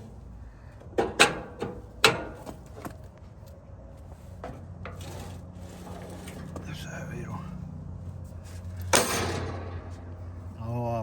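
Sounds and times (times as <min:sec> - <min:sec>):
low steady hum: 0:00.0 - 0:11.0
sharp knocks and clanks: 0:00.8 - 0:03.0, 0:08.8 - 0:10.4.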